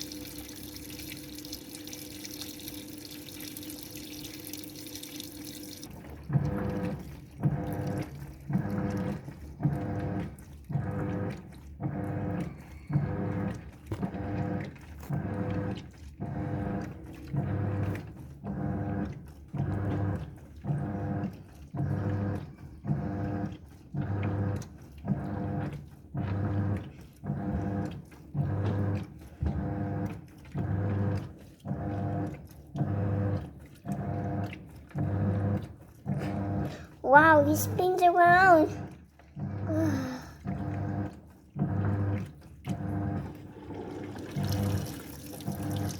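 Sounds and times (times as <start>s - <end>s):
washing machine drum motor humming: 0.0s - 45.9s.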